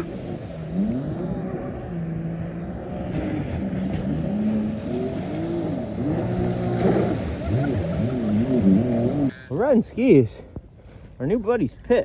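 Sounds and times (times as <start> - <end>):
jet ski engine revving: 0.0 - 9.3.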